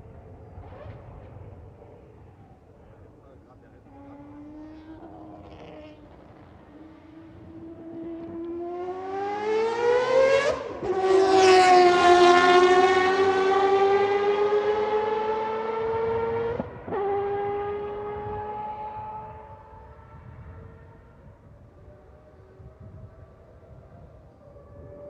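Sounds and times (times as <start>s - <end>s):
racing car engine accelerating: 3.7s - 21.0s.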